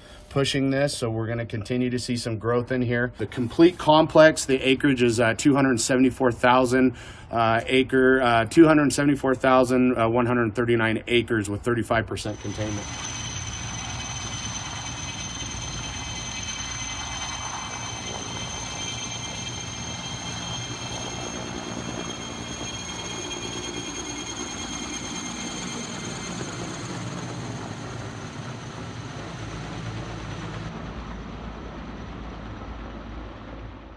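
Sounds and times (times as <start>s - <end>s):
engine running with whine: 12.3s - 33.9s.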